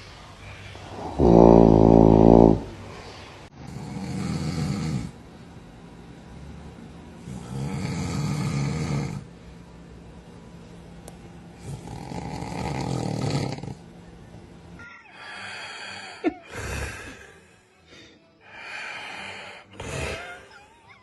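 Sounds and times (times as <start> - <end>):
person snoring: 0.8 - 2.9, 3.6 - 5.2, 7.2 - 9.3, 11.6 - 13.8, 15.2 - 17.4, 18.5 - 20.5.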